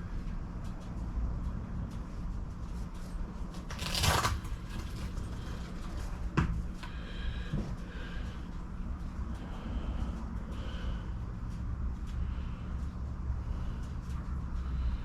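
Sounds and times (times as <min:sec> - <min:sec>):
steady low hum: 0:00.0 - 0:15.0
rustling scrape: 0:03.0 - 0:06.2.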